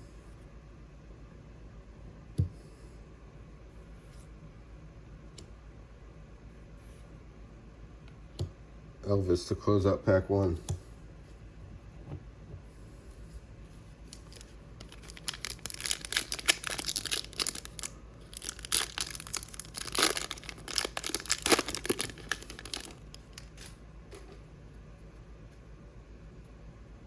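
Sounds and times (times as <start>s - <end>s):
foil wrapper tearing and crinkling: 14.1s - 23.8s.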